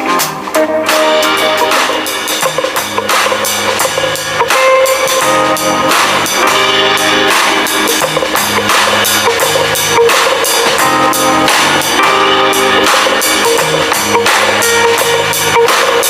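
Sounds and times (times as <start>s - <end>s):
bass: 0.0s - 16.0s
drum kit beat: 0.0s - 16.0s
guitar: 0.0s - 16.0s.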